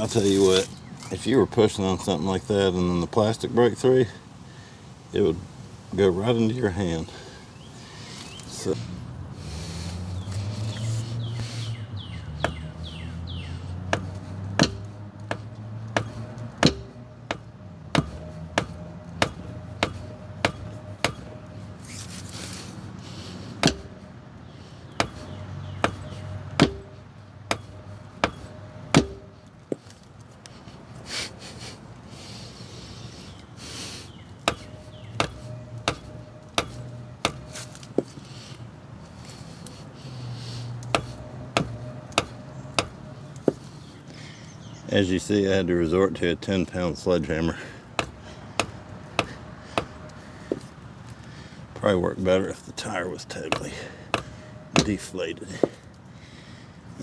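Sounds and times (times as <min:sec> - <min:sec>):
sledgehammer striking metal tool: 0:13.9 - 0:22.0, 0:23.6 - 0:24.1, 0:25.0 - 0:29.5, 0:34.4 - 0:38.2, 0:40.9 - 0:43.6, 0:48.0 - 0:50.6, 0:53.5 - 0:55.8.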